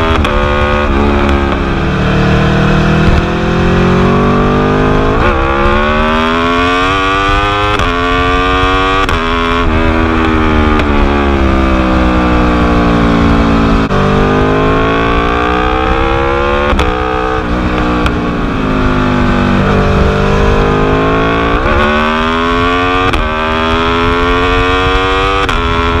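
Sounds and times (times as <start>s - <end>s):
exhaust pops and crackles: 0.0s - 1.7s
motorcycle engine revving: 0.0s - 26.0s.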